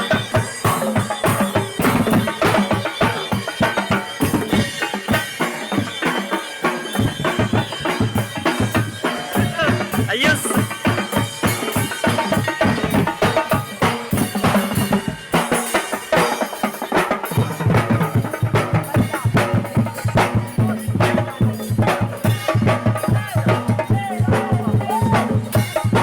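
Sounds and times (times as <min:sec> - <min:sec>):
parade music with drum beat: 0:00.0 - 0:26.0.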